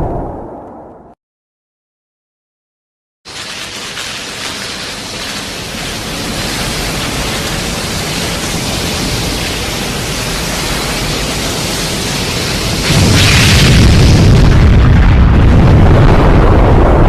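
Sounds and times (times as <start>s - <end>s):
deep explosion rumble: 0.0s - 1.2s, 12.3s - 17.0s
hissing rushing noise: 3.3s - 14.6s.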